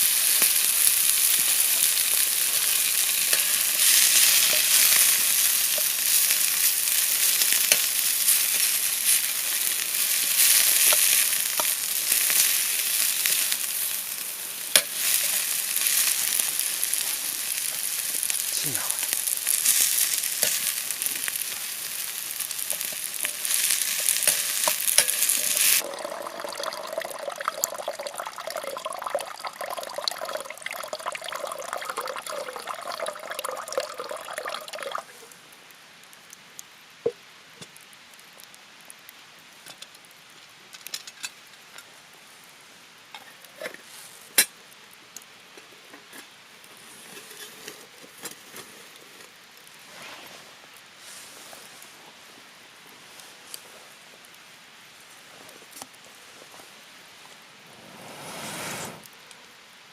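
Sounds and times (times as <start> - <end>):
food sizzling in a pan: 0.0 - 35.3, 56.9 - 59.2.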